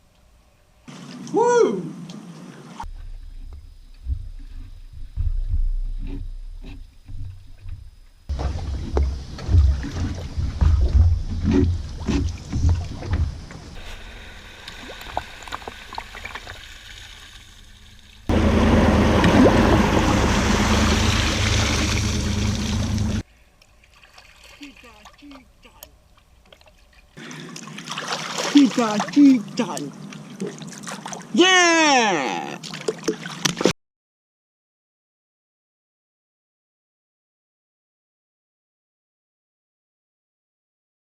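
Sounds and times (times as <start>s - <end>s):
low rumbling knocks: 2.9s - 13.8s
water splashing and rushing: 8.3s - 31.6s, 32.4s - 33.7s.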